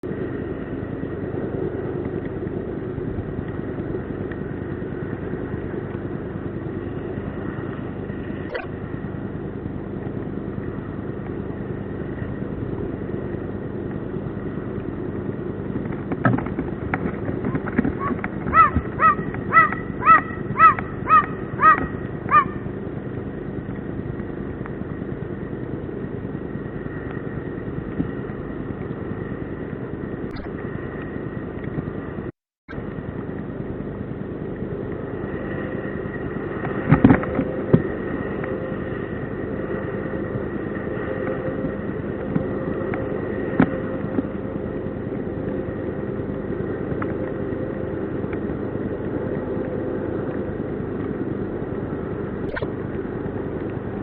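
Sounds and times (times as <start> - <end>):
eagle barking calls: 17.9 - 22.7.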